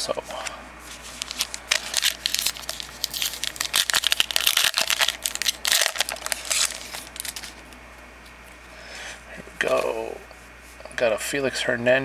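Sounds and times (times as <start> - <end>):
wrapper crinkling and tearing: 0.9 - 7.8.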